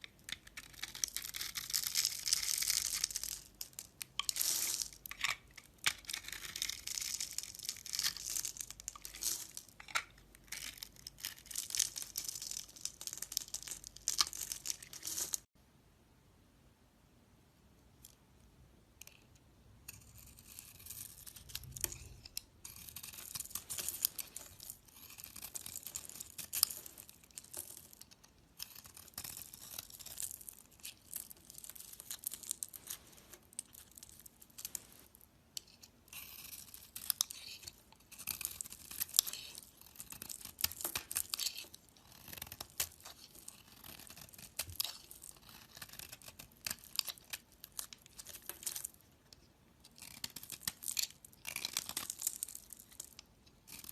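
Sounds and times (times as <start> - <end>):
blade scraping soap: 19.9 - 32.2, 35.6 - 48.8.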